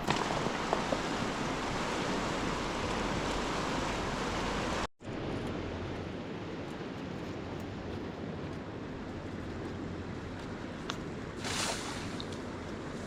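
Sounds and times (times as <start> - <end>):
river water rushing: 0.0 - 4.9.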